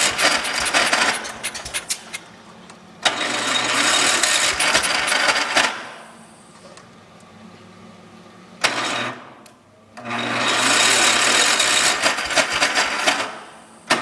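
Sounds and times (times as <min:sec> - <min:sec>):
engine starter cranking: 0:00.0 - 0:02.3, 0:04.3 - 0:05.4, 0:11.5 - 0:13.3.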